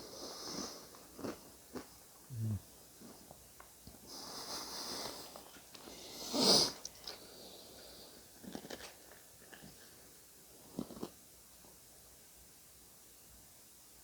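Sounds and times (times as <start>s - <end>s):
breathing through the nose: 0.0s - 1.0s, 4.1s - 8.3s
person chewing cereal: 0.4s - 4.0s, 5.0s - 11.2s.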